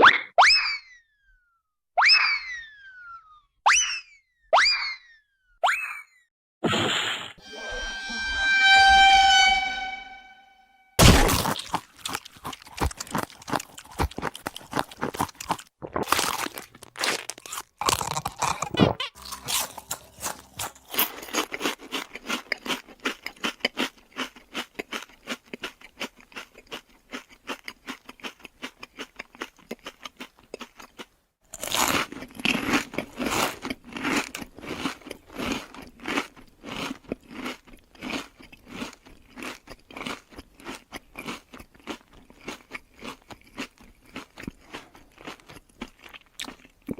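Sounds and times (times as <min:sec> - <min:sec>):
rapid dense crunching: 0:11.0 - 0:25.1.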